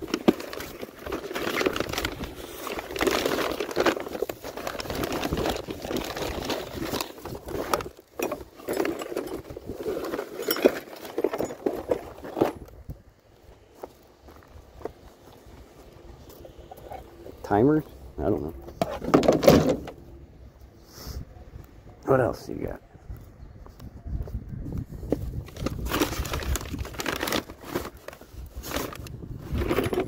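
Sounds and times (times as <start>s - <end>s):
hands rummaging through a box: 0.0s - 13.1s, 24.9s - 30.0s
crinkling and rustling: 0.0s - 20.8s, 24.7s - 30.0s
knocks and clinks: 8.2s - 12.5s.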